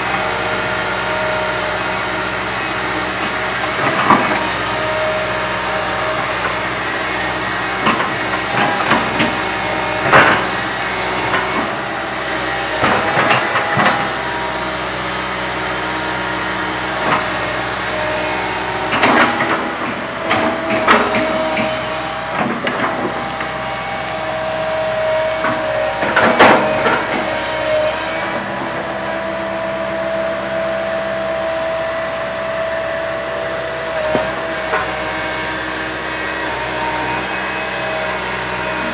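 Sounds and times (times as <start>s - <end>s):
excavator diesel engine running: 0.0s - 38.9s
hydraulic whine: 0.0s - 38.9s
metal clanks and knocks: 18.9s - 29.0s.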